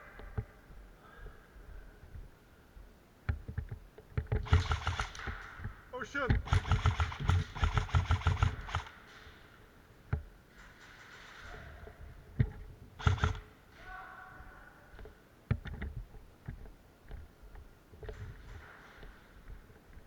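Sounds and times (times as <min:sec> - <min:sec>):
sharp clicks and knocks: 0:03.2 - 0:13.5, 0:15.0 - 0:20.0
quiet hiss: 0:05.1 - 0:06.5.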